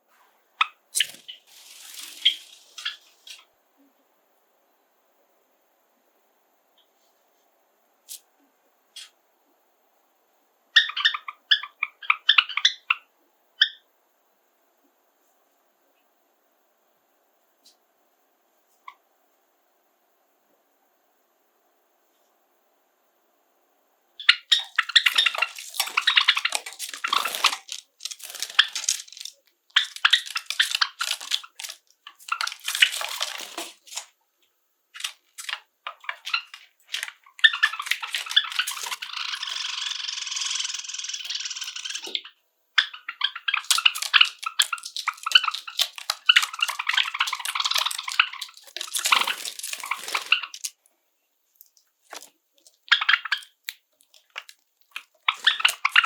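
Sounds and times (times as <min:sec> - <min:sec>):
sparrows chirping and singing: 0:01.0 - 0:03.4, 0:24.2 - 0:31.7, 0:37.4 - 0:42.2.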